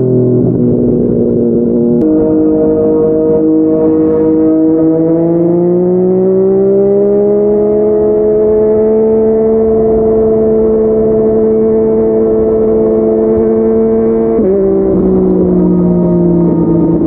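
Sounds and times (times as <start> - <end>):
motorcycle engine revving: 0.0 - 17.0.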